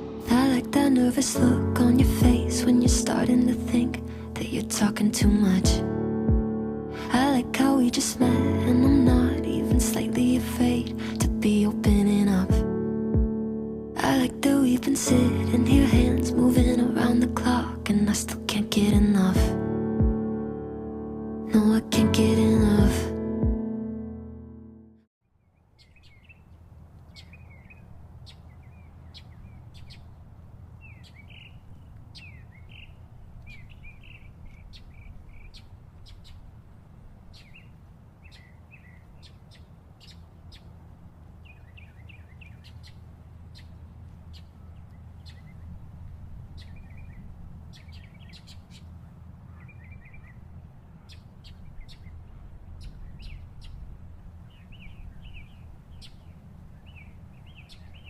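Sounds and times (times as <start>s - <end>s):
low rumble: 0.0s - 3.7s
small birds chirping: 25.4s - 36.6s, 37.2s - 45.8s, 46.5s - 58.0s.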